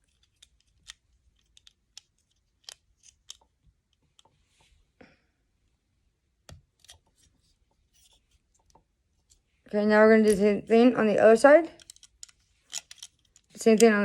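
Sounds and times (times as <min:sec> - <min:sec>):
plastic bricks clicking and tapping: 0:00.0 - 0:04.4, 0:11.8 - 0:14.0.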